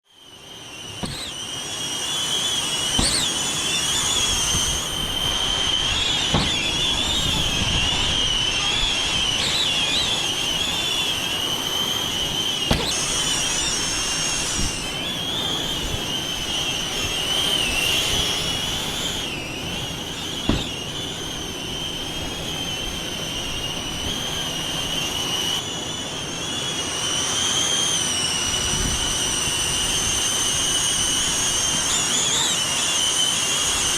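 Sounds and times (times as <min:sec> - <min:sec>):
drone propellers whining: 0:00.0 - 0:33.9
low wind rumble: 0:02.7 - 0:25.6, 0:28.3 - 0:31.8
sharp knocks: 0:06.3 - 0:06.8.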